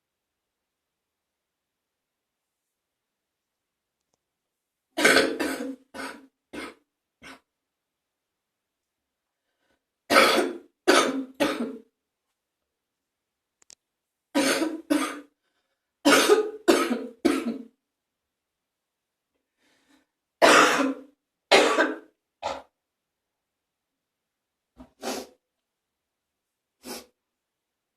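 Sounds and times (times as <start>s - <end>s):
person coughing wetly: 5.0s - 7.5s, 10.1s - 11.9s, 14.4s - 15.3s, 16.0s - 17.7s, 20.4s - 22.7s.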